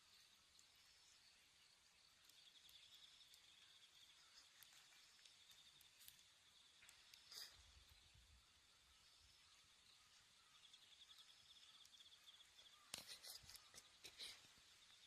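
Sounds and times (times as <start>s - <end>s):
insects trilling: 0.0s - 15.0s
small clicks: 2.2s - 7.4s, 12.8s - 14.2s.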